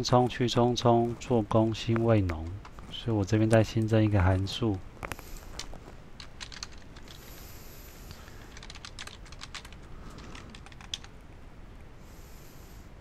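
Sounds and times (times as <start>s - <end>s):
typing on keyboard: 5.6s - 7.2s, 8.2s - 11.2s.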